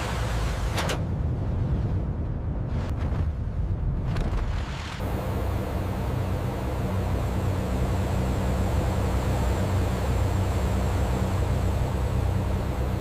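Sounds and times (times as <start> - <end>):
engine drone: 4.9 - 13.0.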